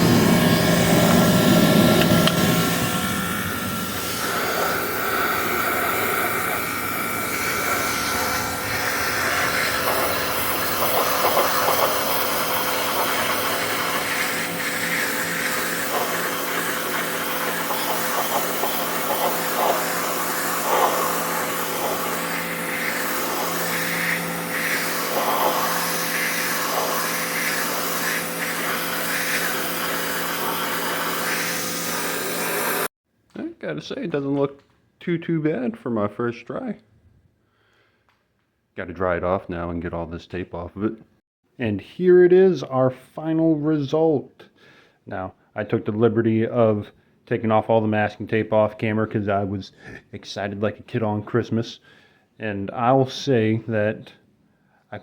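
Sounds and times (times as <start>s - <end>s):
pressure washer pump hum: 0.0s - 32.9s
water jet hissing: 0.0s - 32.9s.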